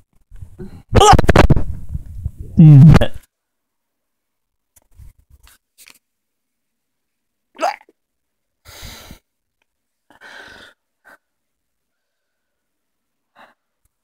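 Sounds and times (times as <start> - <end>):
person hiccuping: 2.6 - 3.2, 7.6 - 7.9.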